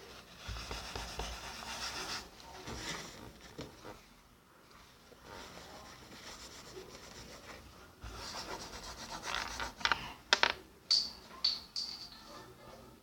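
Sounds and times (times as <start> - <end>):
objects rubbing and scraping: 4.9 - 10.6.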